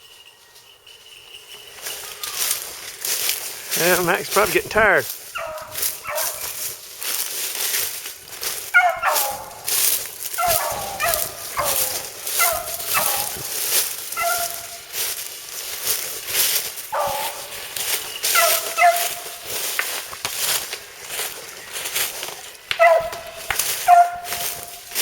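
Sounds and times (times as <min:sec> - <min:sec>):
dog barking: 0:05.4 - 0:06.6, 0:08.7 - 0:14.8, 0:16.9 - 0:17.5, 0:18.3 - 0:19.4, 0:22.8 - 0:24.7.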